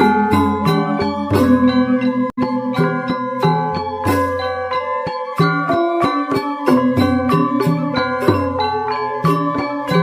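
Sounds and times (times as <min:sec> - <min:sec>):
low held tone: 0:00.0 - 0:04.0
metallophones struck in quick rhythm: 0:00.0 - 0:10.0.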